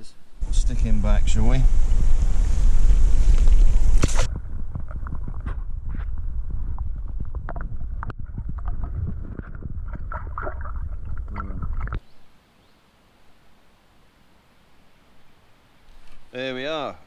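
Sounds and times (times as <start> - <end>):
faint hiss: 0.0 - 4.3
wind buffeting microphone: 0.4 - 12.0.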